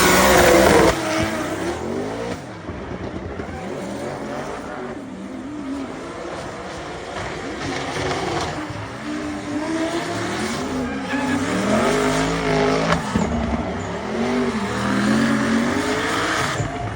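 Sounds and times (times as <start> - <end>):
car engine revving: 0.0 - 16.9
tyre squeal: 7.3 - 16.9.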